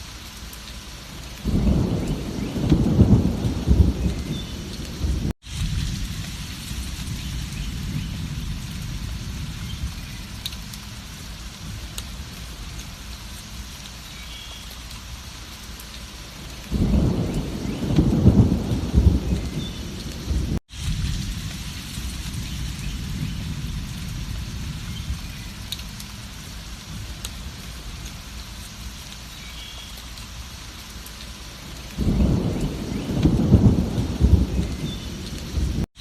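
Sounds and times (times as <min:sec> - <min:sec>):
heavy rain: 0:00.0 - 0:36.0
thunder rumbling: 0:01.4 - 0:12.9, 0:16.6 - 0:28.3, 0:31.7 - 0:36.0.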